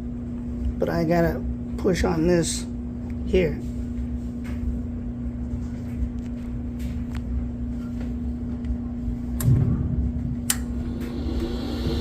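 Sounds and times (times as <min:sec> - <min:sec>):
furnace electrical hum: 0:00.0 - 0:12.0
low thump: 0:09.4 - 0:12.0
motor whining: 0:10.8 - 0:12.0.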